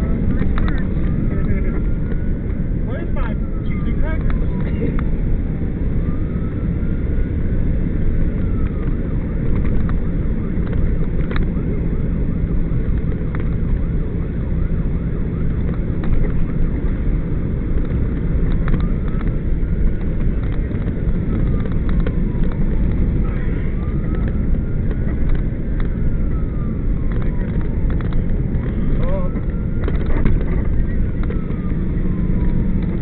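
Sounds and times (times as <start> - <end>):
fire truck siren: 0.0 - 33.0
heavy engine and road rumble: 0.0 - 33.0.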